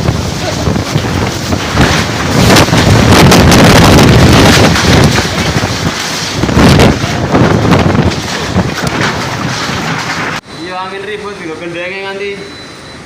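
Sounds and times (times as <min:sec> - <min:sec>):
wind gusts on microphone: 0:00.0 - 0:10.4.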